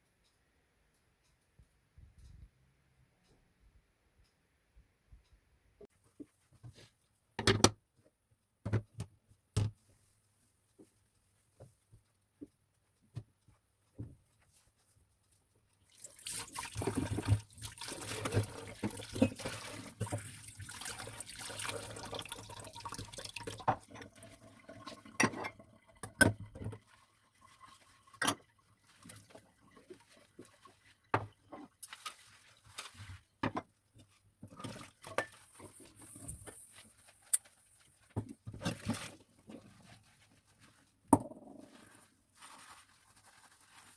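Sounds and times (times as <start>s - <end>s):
tap water running into sink: 15.9s - 29.8s.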